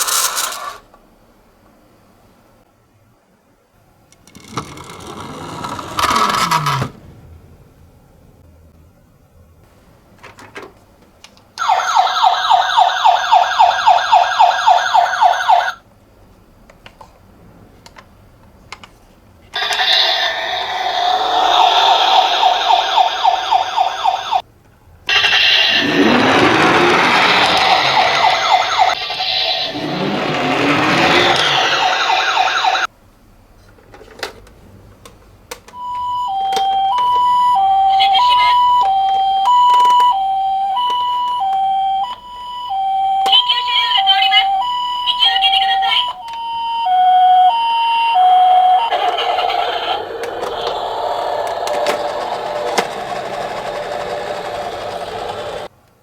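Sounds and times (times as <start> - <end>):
toy electronic siren warbling: 11.6 - 15.8, 19.6 - 24.4, 25.1 - 32.9, 35.8 - 55.7
loud rushing noise: 25.1 - 32.9.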